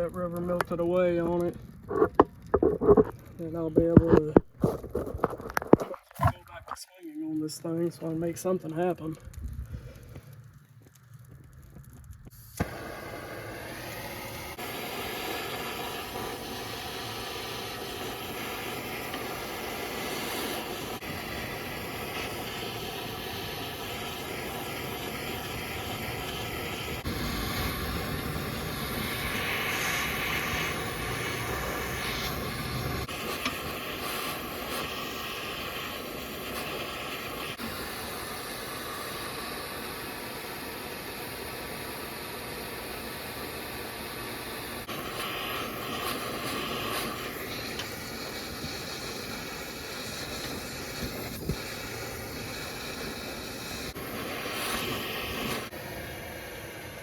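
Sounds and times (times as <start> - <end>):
gas torch hissing: 12.2 - 57.0.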